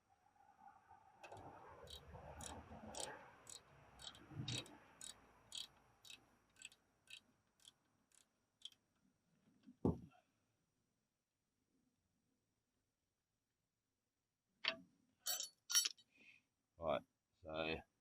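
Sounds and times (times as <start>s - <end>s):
ratchet wrench clicking: 1.3s - 8.8s.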